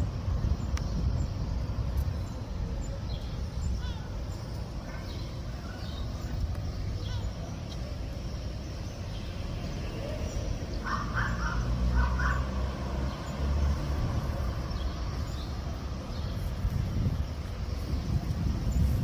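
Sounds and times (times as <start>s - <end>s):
wind on microphone: 0.0s - 9.0s, 13.7s - 19.0s.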